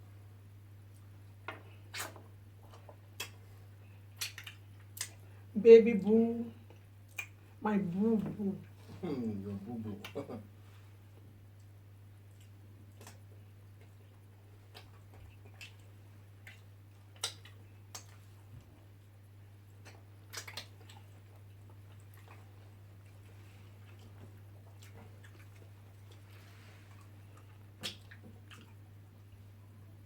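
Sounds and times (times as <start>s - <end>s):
steady low hum: 0.0s - 30.0s
chewing food: 0.9s - 5.3s, 11.1s - 29.6s.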